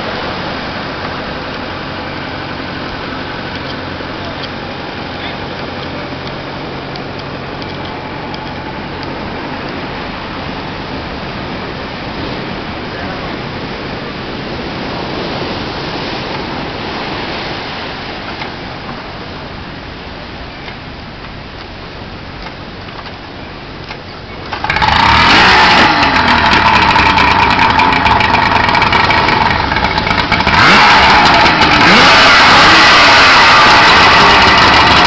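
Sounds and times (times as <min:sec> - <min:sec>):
surf washing: 0:00.0 - 0:35.0
engine revving: 0:24.5 - 0:35.0.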